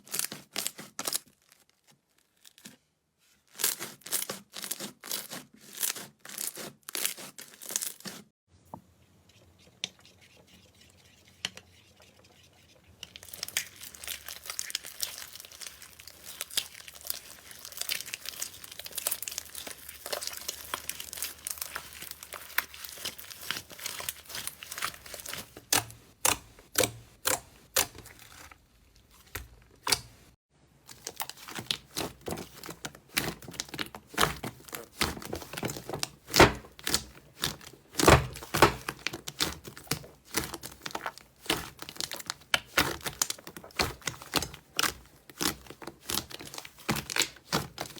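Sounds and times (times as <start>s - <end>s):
slime crackling and popping: 13.2s - 30.1s, 30.9s - 47.9s.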